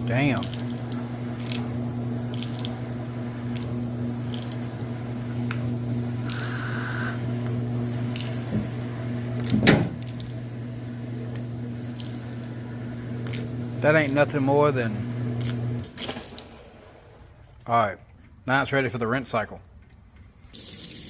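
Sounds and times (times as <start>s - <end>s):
motor whine: 0.0s - 15.9s
washing machine motor hum: 0.0s - 17.4s.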